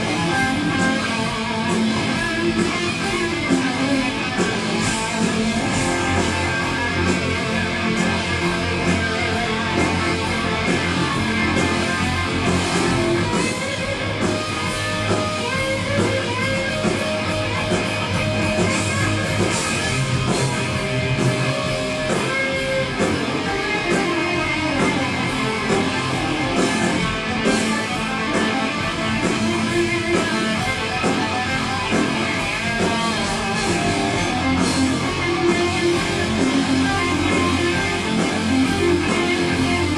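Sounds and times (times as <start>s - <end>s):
heavy metal band playing live: 0.0s - 39.9s.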